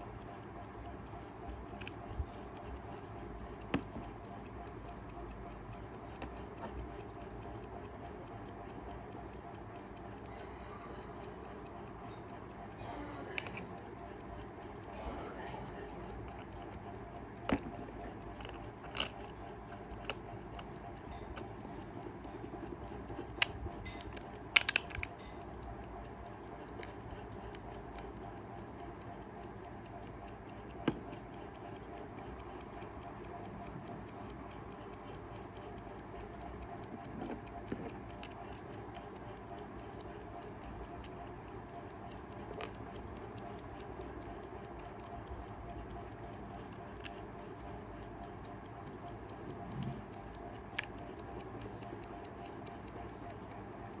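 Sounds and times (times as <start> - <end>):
alarm clock ticking fast: 0.0 - 54.0
sharp clicks and knocks: 3.4 - 7.7, 17.4 - 21.4.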